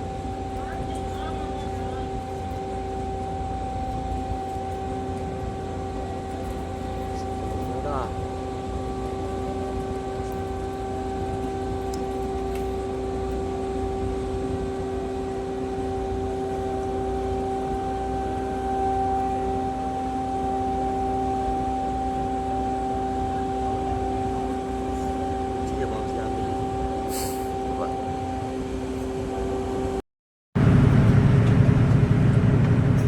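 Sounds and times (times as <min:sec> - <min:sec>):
large engine droning: 0:00.0 - 0:30.0, 0:30.6 - 0:33.0.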